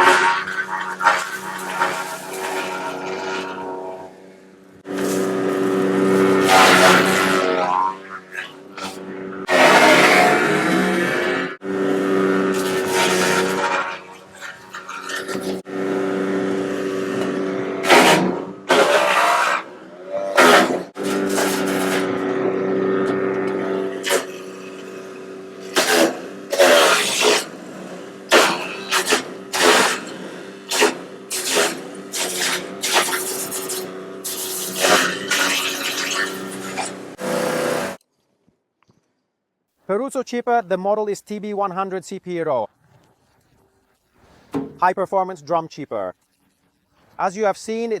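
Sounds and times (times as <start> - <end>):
wood chipper engine running: 0.0 - 38.0
branches crunching in chipper: 4.7 - 19.2.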